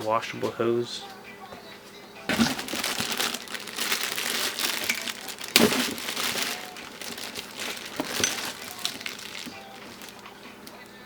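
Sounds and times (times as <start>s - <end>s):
plastic packaging crinkling: 2.3s - 10.9s.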